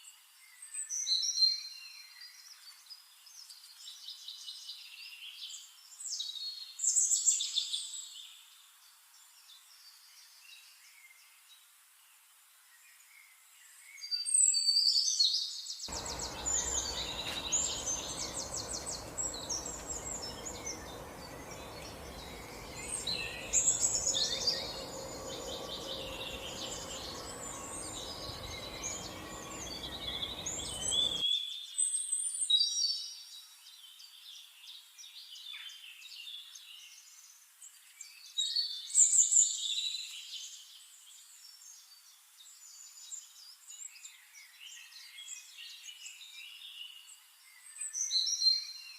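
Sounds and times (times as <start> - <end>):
low background noise: 15.9 - 31.2
sparrows chirping: 15.9 - 31.2.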